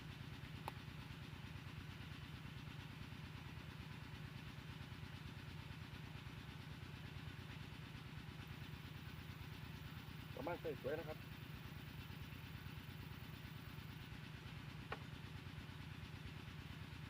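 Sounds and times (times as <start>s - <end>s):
small engine idling: 0.0s - 17.0s.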